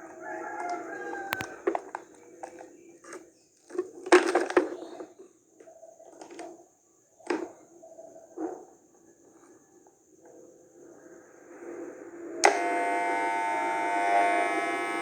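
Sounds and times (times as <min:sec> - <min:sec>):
sharp clicks: 0:01.3 - 0:01.5.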